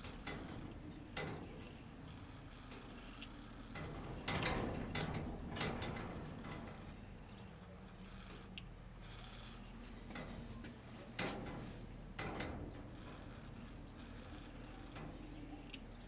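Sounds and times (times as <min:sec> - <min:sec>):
hand tool clicks and scraping on metal: 0:00.0 - 0:01.4
ratchet clicking: 0:00.0 - 0:01.4, 0:02.0 - 0:09.7, 0:12.2 - 0:15.8.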